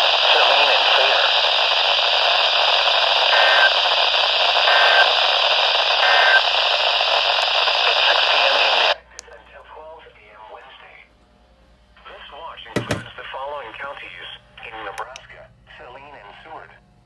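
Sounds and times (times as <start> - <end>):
radio static hiss: 0.0 - 11.1.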